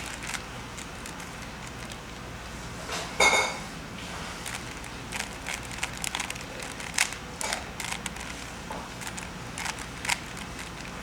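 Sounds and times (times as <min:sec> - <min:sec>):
plastic puzzle cube clicking: 0:04.5 - 0:08.4, 0:09.0 - 0:10.9.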